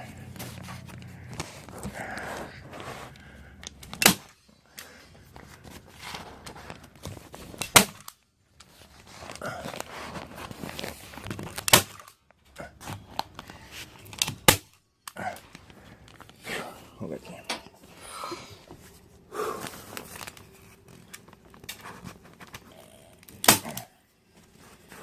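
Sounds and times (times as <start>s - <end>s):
paper rustling: 0.1s - 7.8s, 8.5s - 11.8s, 18.6s - 23.5s.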